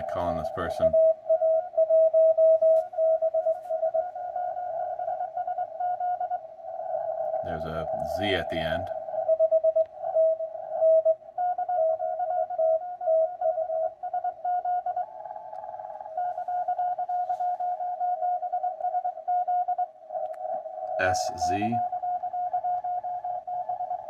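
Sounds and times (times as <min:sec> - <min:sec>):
morse code tones: 0:00.0 - 0:19.8, 0:20.9 - 0:24.0
faint radio band noise: 0:00.0 - 0:24.0.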